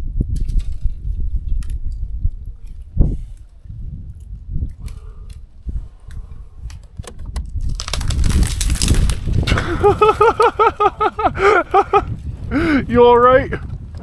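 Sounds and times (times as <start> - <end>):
crash of branches: 7.4 - 12.1
bursts of laughter: 9.6 - 13.0.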